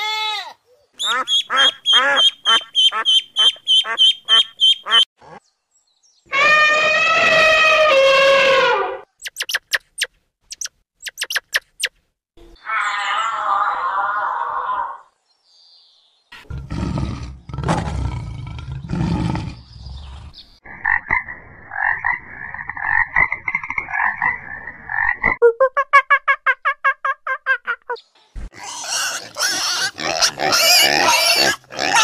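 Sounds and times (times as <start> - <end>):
rattling frog-like croaking: 20.8 - 25.4.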